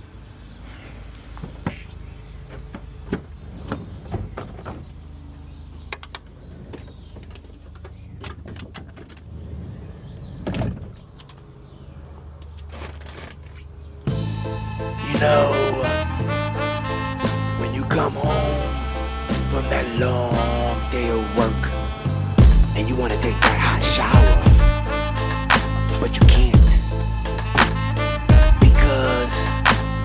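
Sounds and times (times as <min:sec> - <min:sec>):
low hum: 0:14.1 - 0:30.0.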